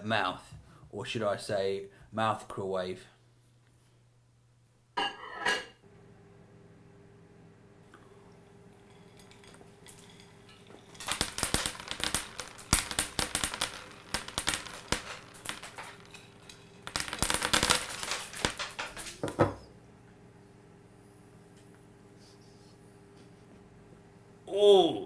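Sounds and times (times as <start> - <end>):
frozen peas clattering: 8.9 - 19.1.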